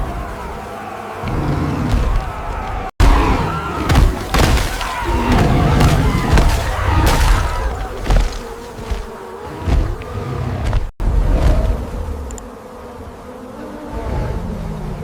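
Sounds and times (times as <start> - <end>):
bee swarm buzzing: 0.0 - 14.4
sharp thuds: 1.3 - 11.8.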